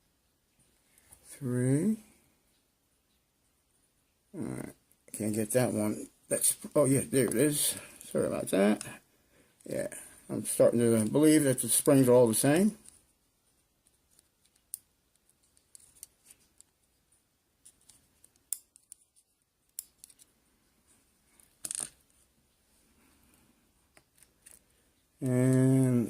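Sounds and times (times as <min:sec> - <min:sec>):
small metallic clicks and taps: 0:17.6 - 0:20.3.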